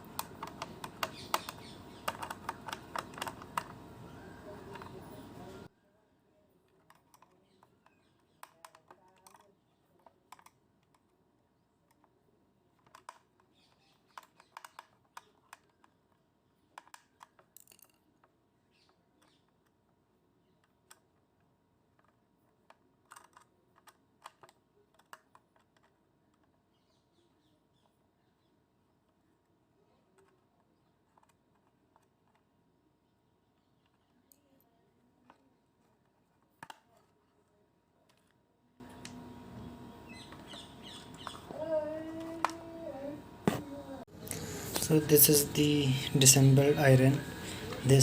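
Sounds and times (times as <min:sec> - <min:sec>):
small metal and plastic parts clicking: 0:00.0 - 0:05.6, 0:06.7 - 0:11.2, 0:11.8 - 0:26.9, 0:29.9 - 0:32.5, 0:35.2 - 0:39.2.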